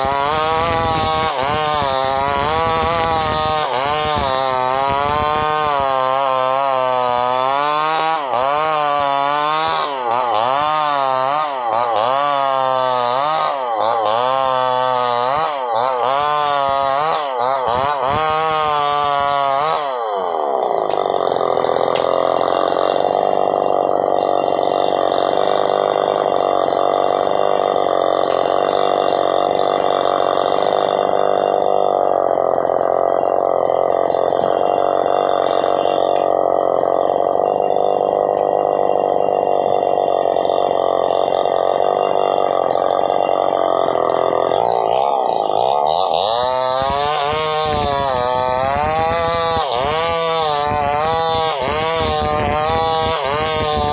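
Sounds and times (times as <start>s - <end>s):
chainsaw cutting a log: 0.0s - 53.9s.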